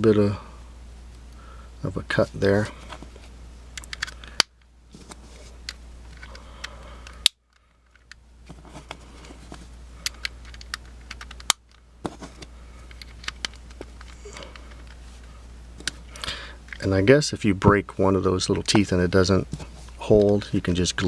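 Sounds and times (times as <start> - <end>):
plastic cube pieces clicking: 10.0 - 11.7.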